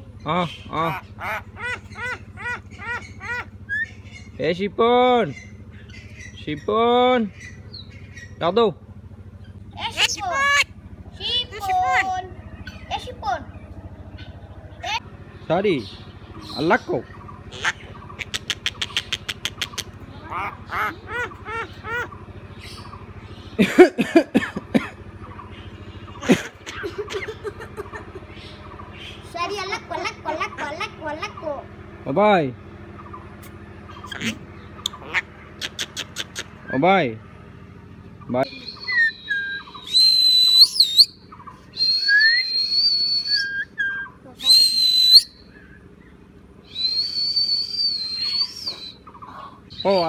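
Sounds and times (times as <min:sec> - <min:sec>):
bird giving harsh calls: 0:00.0 - 0:08.6, 0:09.4 - 0:23.8, 0:25.0 - 0:32.0, 0:32.6 - 0:37.0, 0:38.0 - 0:50.0
low hum: 0:00.0 - 0:49.9
bird chatter: 0:00.0 - 0:50.0
bird long high whistles: 0:38.5 - 0:45.8, 0:46.6 - 0:49.1.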